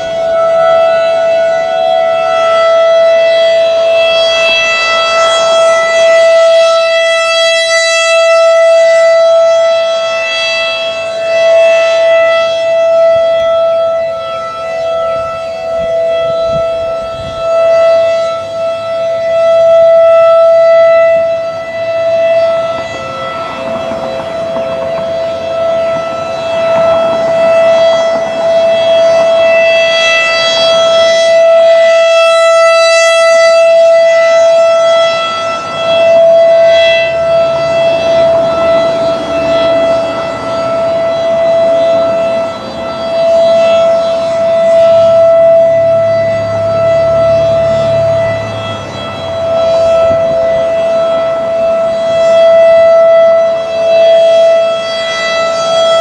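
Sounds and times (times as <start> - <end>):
rotating tornado siren: 0.0 - 56.0.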